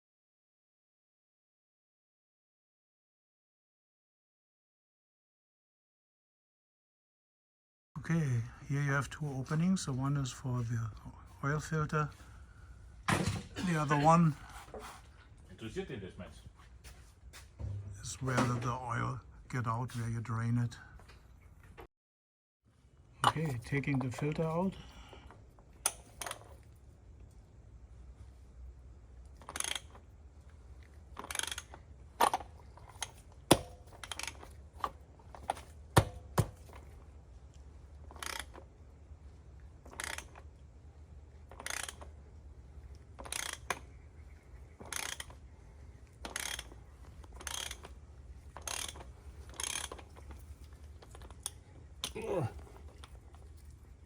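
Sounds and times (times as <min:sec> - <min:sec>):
faint low hum: 0:22.7 - 0:54.0
ratchet wrench clicking: 0:29.5 - 0:29.8, 0:46.2 - 0:46.7, 0:47.4 - 0:47.9, 0:48.6 - 0:50.0
sharp metal clicks: 0:31.2 - 0:36.7, 0:43.2 - 0:44.0, 0:46.1 - 0:50.4.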